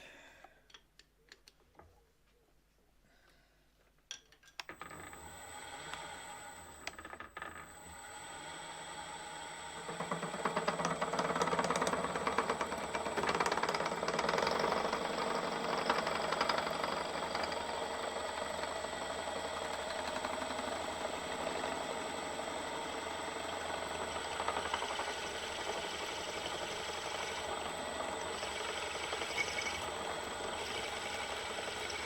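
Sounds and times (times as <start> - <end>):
machine tool cutting metal: 24.3 - 32.0.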